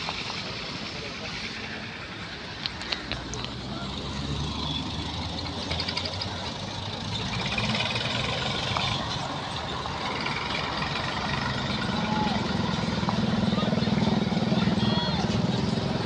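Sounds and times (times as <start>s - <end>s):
heavy machinery engines running: 4.2s - 16.0s.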